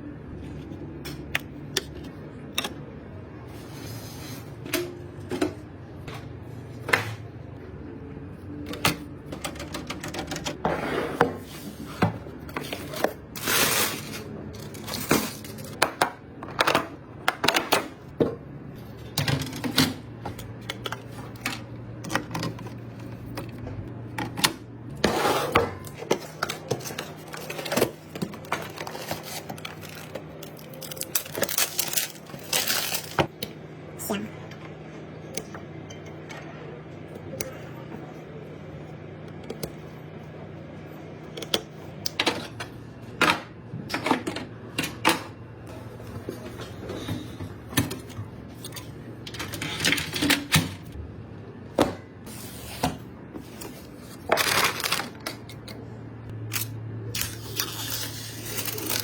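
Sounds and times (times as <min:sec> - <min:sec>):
computer parts clicking and knocking: 0:08.7 - 0:10.6.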